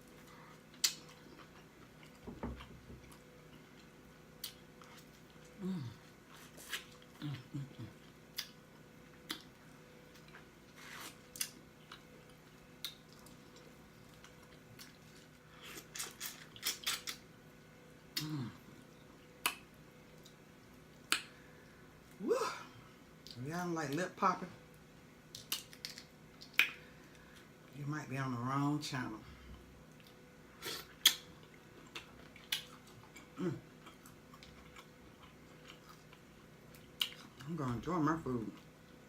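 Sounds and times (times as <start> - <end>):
lip smacking and popping: 0.7 - 2.2, 3.2 - 5.5, 6.6 - 8.6, 9.2 - 9.5, 11.3 - 15.0, 18.9 - 20.4, 21.0 - 21.4, 25.3 - 26.9, 29.9 - 37.4.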